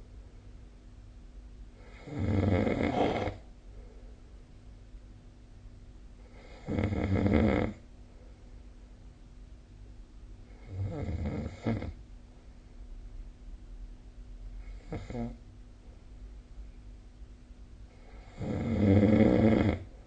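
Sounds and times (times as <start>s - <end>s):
person snoring: 1.8s - 3.5s, 6.3s - 7.8s, 10.6s - 12.0s, 14.7s - 15.4s, 18.1s - 19.9s.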